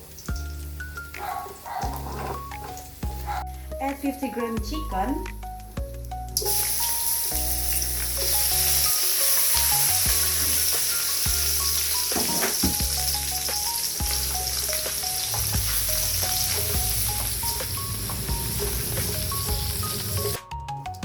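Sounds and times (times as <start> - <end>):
chicken sizzling in hot oil: 0.0 - 3.5, 6.1 - 20.4
background music: 0.0 - 21.0.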